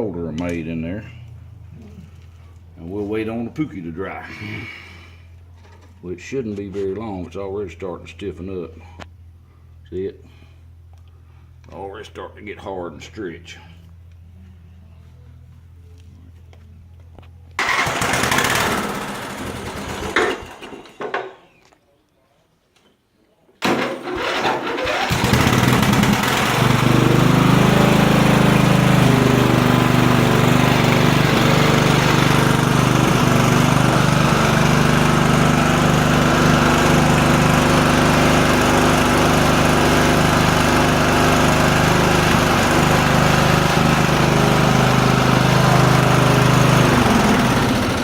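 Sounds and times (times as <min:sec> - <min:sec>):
lawnmower engine running: 0:17.1 - 0:21.4, 0:23.6 - 0:48.0.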